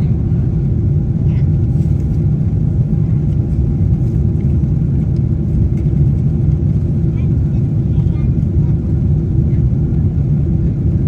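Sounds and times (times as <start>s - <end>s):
airliner cabin drone: 0.0s - 11.0s.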